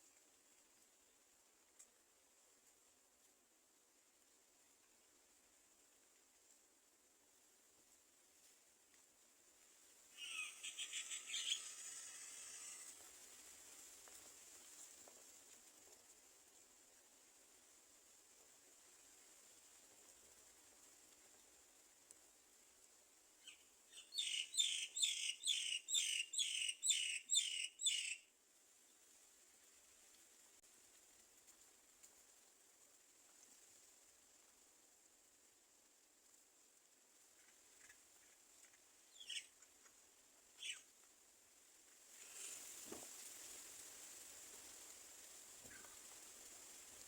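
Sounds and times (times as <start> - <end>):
faint steady hiss: 0.0 - 47.0
bird raspy high calls: 10.2 - 12.8, 23.4 - 28.2, 39.1 - 39.5.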